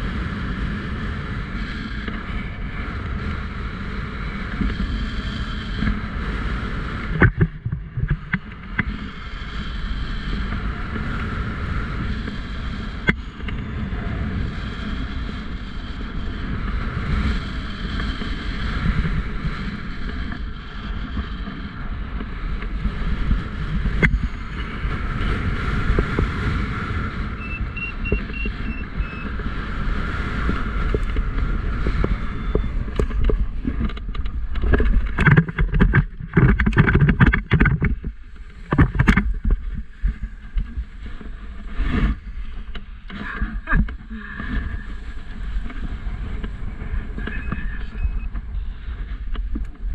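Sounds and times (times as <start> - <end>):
wind buffeting microphone: 0.0 - 49.9
high electronic beeps: 27.4 - 29.3, 32.3 - 32.8, 47.4 - 48.3.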